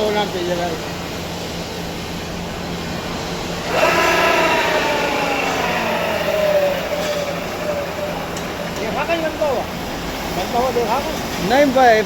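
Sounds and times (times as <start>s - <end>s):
metal lathe humming: 3.6s - 10.4s
loud squeal falling in pitch: 3.7s - 9.4s.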